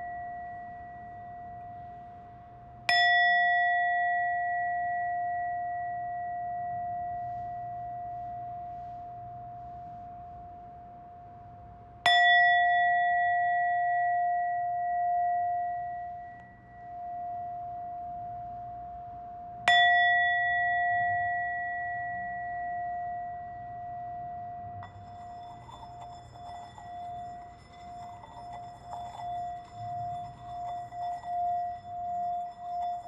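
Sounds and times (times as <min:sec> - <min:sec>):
singing bowl ringing: 0:00.0 - 0:11.0, 0:12.0 - 0:33.0
higher bright ringing: 0:19.7 - 0:33.0.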